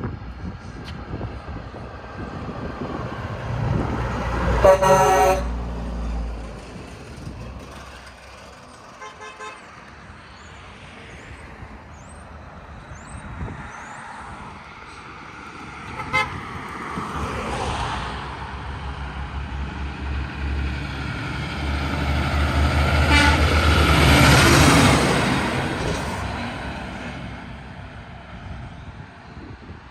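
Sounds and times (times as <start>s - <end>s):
heavy vehicle engine rumble: 0.0s - 17.1s, 17.8s - 29.9s
road traffic passing: 0.0s - 29.9s
car horn toots: 4.6s - 5.6s, 9.0s - 9.6s, 16.0s - 16.4s, 23.1s - 23.6s.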